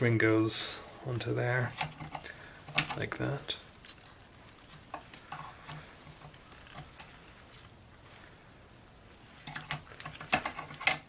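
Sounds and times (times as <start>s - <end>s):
metal latch clicks: 1.7s - 3.0s, 9.5s - 11.0s.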